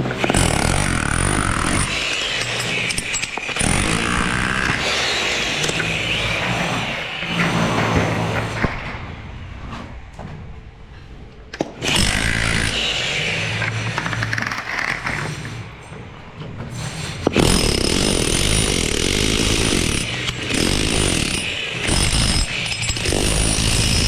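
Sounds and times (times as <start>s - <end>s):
power tool whining: 0.2s - 8.6s, 17.2s - 24.0s.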